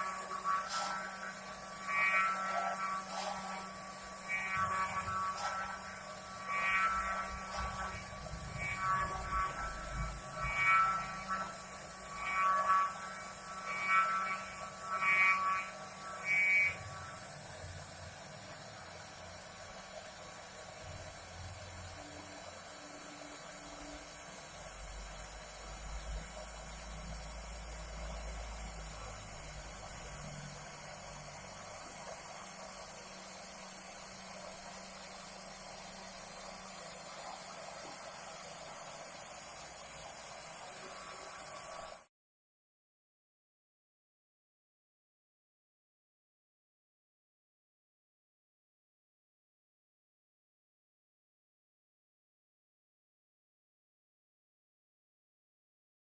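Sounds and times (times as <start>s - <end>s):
stepper motors whining: 0.0s - 18.8s
steady low hum: 0.0s - 42.0s.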